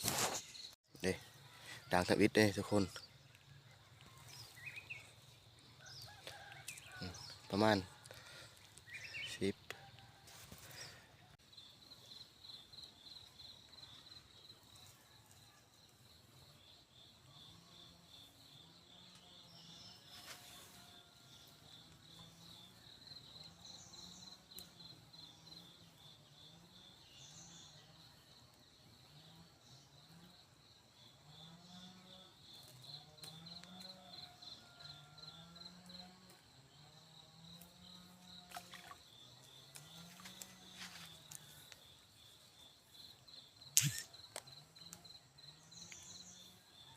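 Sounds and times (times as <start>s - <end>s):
insect pulsed high trill: 43.8s - 44.2s.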